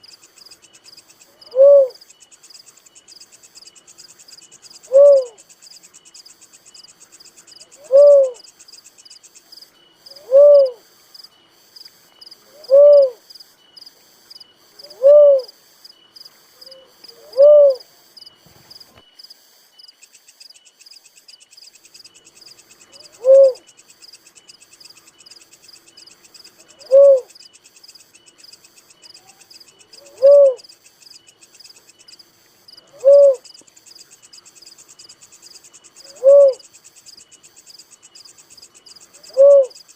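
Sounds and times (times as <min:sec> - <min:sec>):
high-pitched insect trill: 0:00.0 - 0:39.9
dove hooting: 0:01.3 - 0:02.0, 0:04.8 - 0:05.5, 0:07.6 - 0:08.5, 0:10.0 - 0:10.9, 0:12.4 - 0:13.2, 0:14.8 - 0:15.6, 0:16.6 - 0:17.9, 0:22.8 - 0:23.7, 0:26.5 - 0:27.4, 0:29.1 - 0:30.7, 0:32.7 - 0:33.5, 0:36.0 - 0:36.7, 0:39.0 - 0:39.9.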